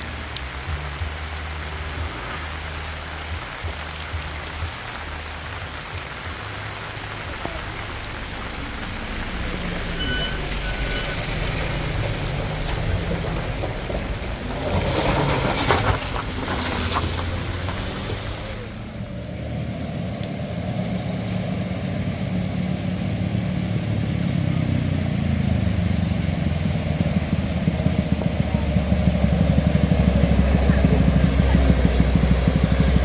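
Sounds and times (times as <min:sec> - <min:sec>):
heavy vehicle engine droning: 0:00.0 - 0:33.0
brief high tones: 0:09.9 - 0:11.3.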